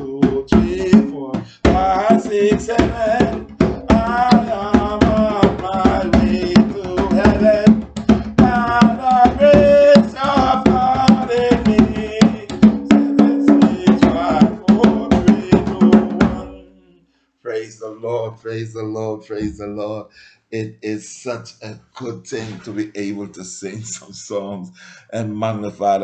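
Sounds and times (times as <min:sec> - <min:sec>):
fast drum beats: 0:00.0 - 0:16.6
man singing gospel song: 0:00.0 - 0:18.2.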